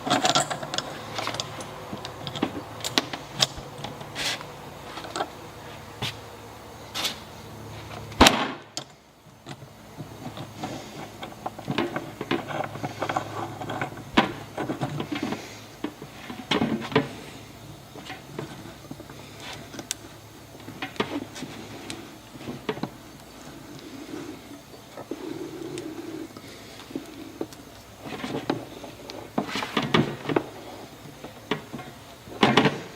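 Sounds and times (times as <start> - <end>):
hardware clicks and rattles: 0.0 - 5.4.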